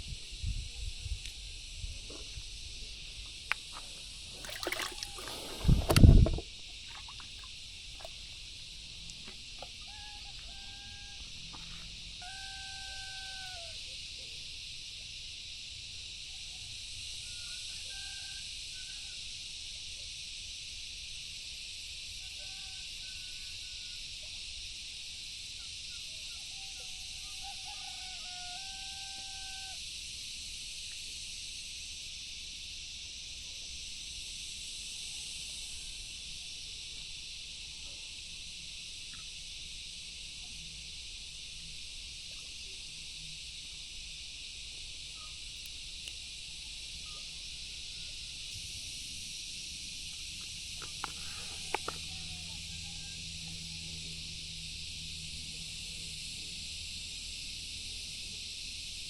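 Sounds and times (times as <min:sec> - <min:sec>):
insect chorus: 0:00.0 - 0:59.0.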